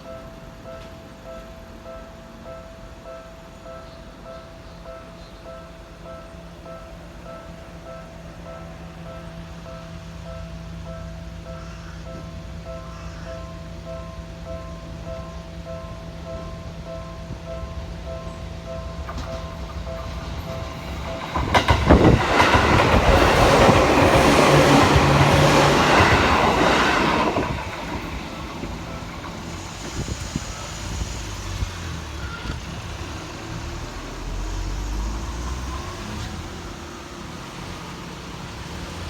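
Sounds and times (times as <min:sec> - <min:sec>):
crossing warning bell ringing: 0:00.0 - 0:33.4
train passing rush: 0:00.0 - 0:39.0
train wheels clattering: 0:17.3 - 0:32.8.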